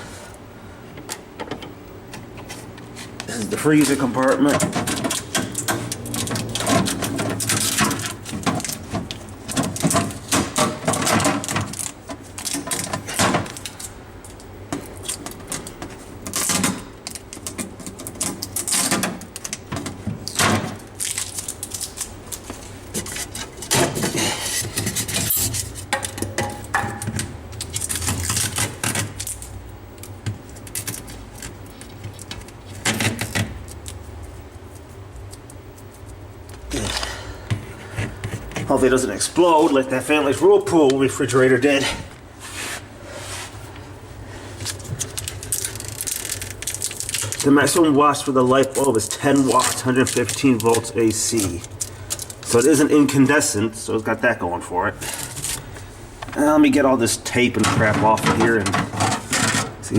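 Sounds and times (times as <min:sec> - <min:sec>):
packaging rustling: 0:44.5 - 0:47.8.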